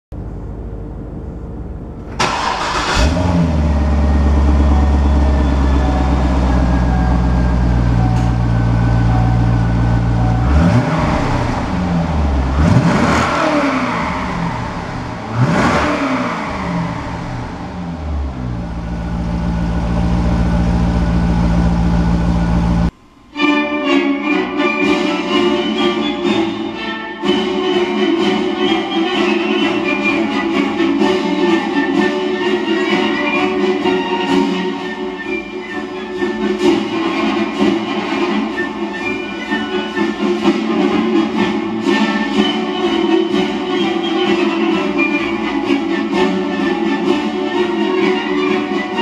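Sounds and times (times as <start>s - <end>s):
car engine revving and idling: 0.2s - 23.2s.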